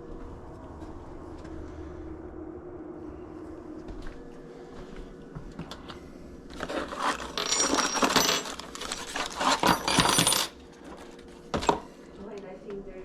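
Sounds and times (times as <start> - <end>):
metal objects clinking: 6.6 - 11.0.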